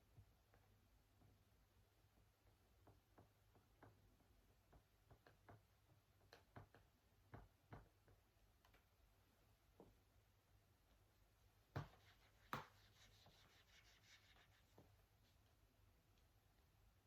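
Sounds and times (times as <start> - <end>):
writing tool tapping on surface: 2.2 - 8.2, 11.8 - 13.0.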